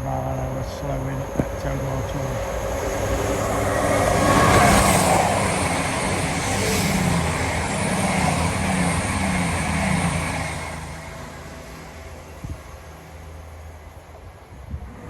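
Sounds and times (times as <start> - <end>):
diesel engines droning: 0.0 - 15.0
train wheels rushing on rail: 0.0 - 15.0.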